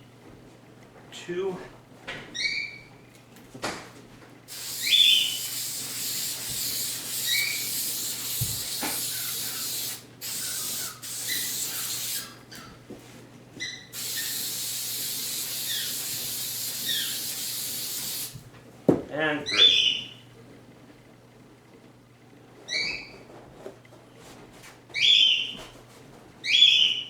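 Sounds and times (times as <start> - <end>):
aerosol can spraying: 4.5 - 12.4, 13.9 - 18.4.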